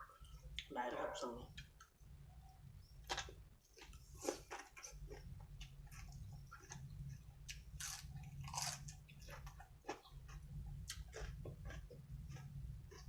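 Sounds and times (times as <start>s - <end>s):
person chewing crunchy food: 3.1s - 13.0s.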